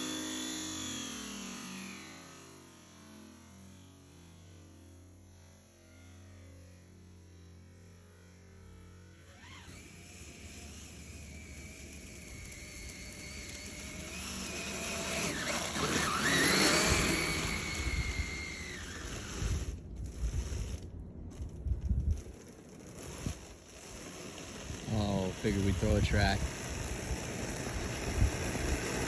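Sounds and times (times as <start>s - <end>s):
high motor whine: 0.0s - 5.0s, 7.2s - 29.0s
track noise on snow: 9.4s - 29.0s.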